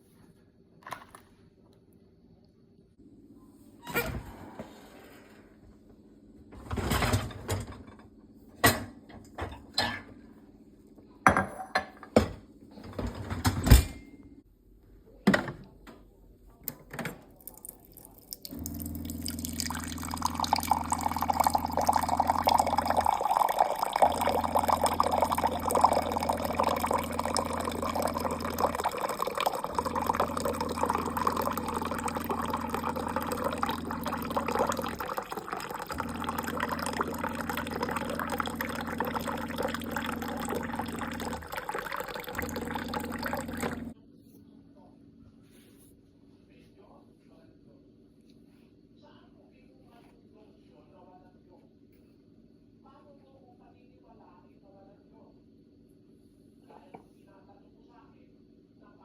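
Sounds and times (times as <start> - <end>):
water running from a tap: 17.3 - 44.0.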